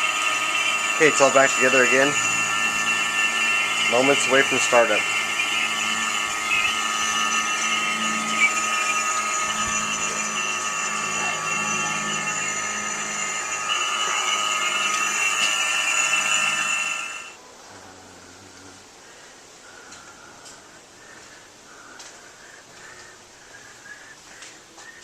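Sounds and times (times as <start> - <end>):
machine motor whining: 0.0 - 17.4
low hum: 0.0 - 18.8.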